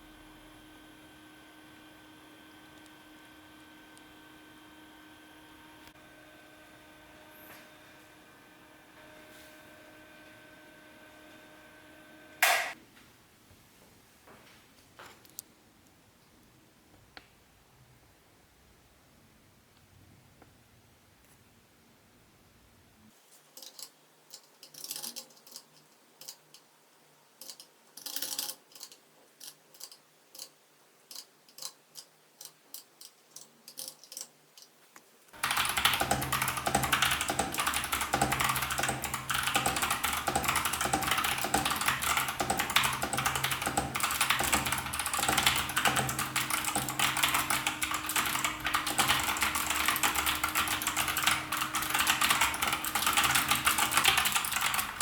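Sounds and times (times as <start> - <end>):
mechanical keyboard typing: 24.7 - 26.4, 27.4 - 30.5, 32.4 - 34.3, 35.4 - 55.0.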